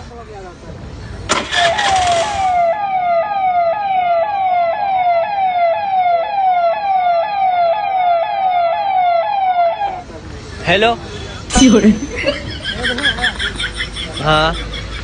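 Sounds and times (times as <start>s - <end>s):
burst of noise: 1.3s - 2.7s
phone ringtone imitating police siren: 1.5s - 10.0s.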